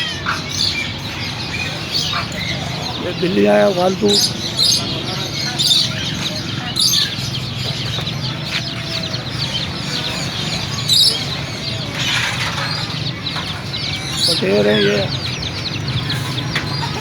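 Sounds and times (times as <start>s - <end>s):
caged birds chirping and calling: 0.0s - 17.0s
fowl clucking: 16.0s - 17.0s.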